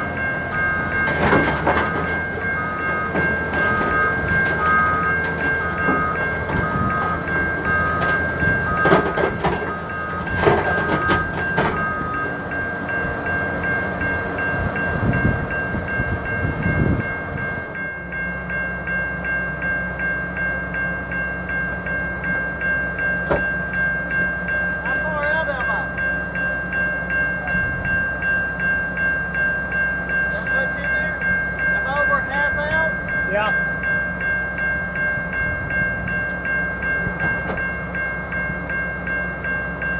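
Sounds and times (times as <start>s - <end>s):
metal clanks: 0.0s - 12.4s, 23.2s - 25.1s
alarm beeping: 0.0s - 17.8s
excavator diesel engine whine: 0.0s - 39.9s.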